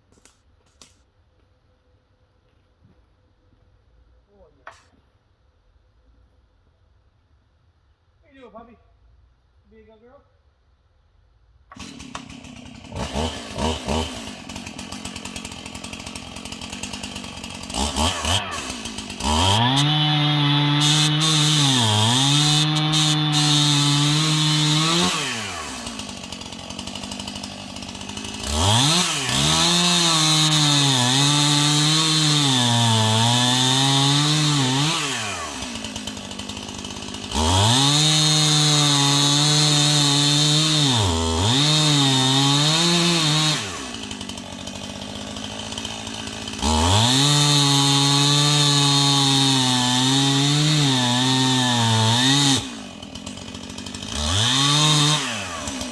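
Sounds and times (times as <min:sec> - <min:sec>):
chainsaw cutting log: 0:11.7 - 0:55.9.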